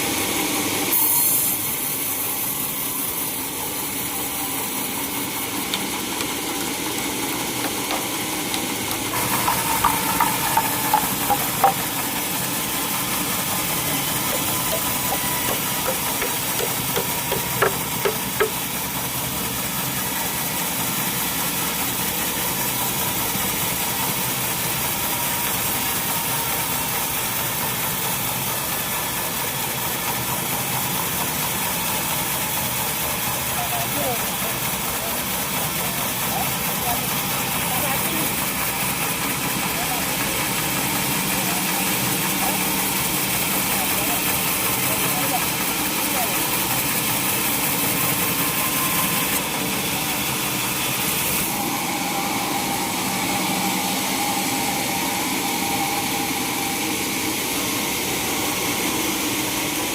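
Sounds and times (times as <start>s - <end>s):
sawmill machinery droning: 0.0s - 59.9s.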